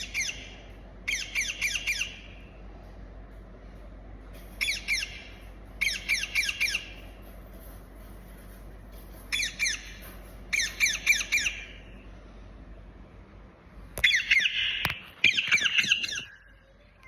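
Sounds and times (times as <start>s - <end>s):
parrot squawking: 0.0s - 2.3s, 4.6s - 7.0s, 9.3s - 11.8s, 14.0s - 16.6s.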